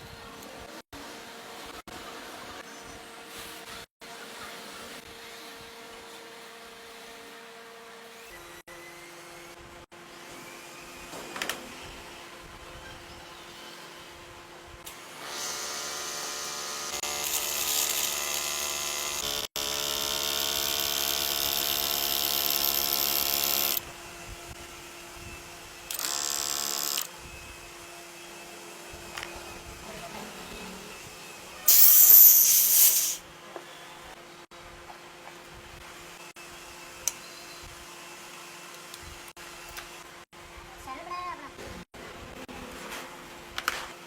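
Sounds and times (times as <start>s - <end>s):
power tool motor whining: 31.7s - 33.2s.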